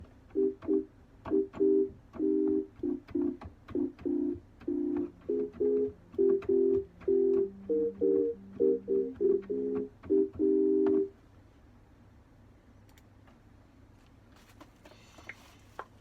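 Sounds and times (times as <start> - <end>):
staccato synthesizer chords: 0.4 - 11.1
held bass note: 5.2 - 9.9.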